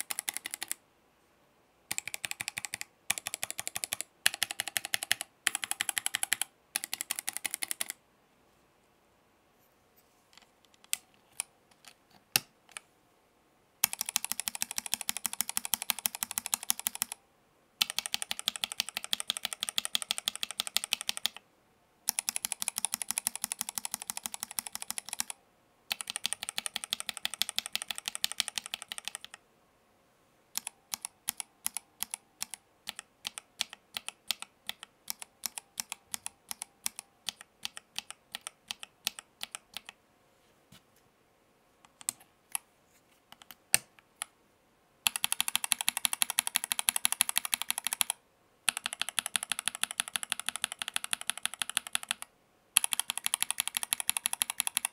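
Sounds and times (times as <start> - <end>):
mechanical keyboard typing: 0.0 - 0.8, 1.9 - 8.0, 13.8 - 17.2, 17.8 - 21.4, 22.1 - 29.4, 30.5 - 40.0, 45.0 - 54.9.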